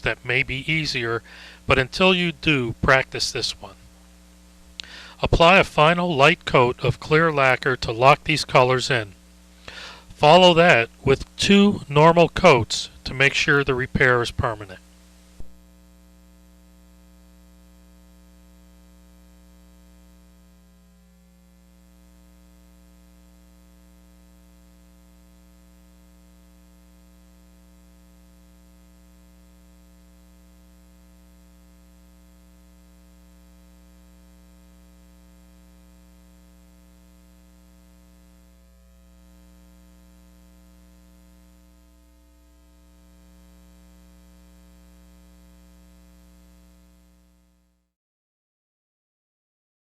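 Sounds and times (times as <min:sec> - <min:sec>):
faint hiss: 0:00.0 - 0:15.6
electrical hum and buzz: 0:00.0 - 0:47.9.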